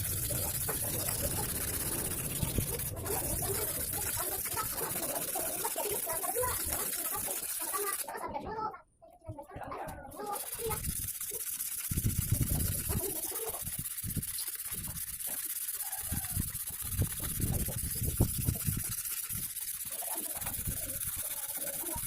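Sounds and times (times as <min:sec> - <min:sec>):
steady hiss: 0:00.0 - 0:08.0.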